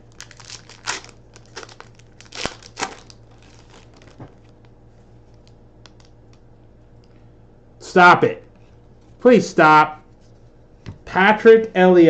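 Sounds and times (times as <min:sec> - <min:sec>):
card wrapper tearing and crinkling: 0:00.0 - 0:04.5.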